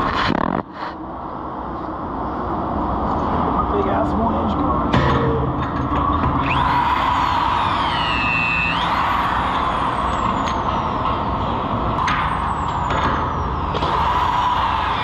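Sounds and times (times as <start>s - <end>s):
electric wrench motor whine: 6.4s - 10.9s.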